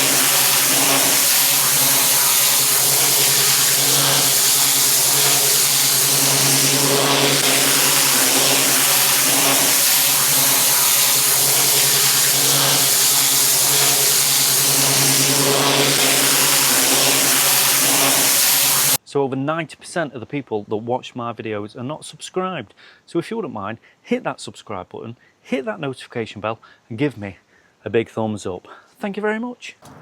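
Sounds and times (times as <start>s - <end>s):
engine drone: 0.0s - 19.0s
high-pressure water spray hissing: 0.0s - 19.0s.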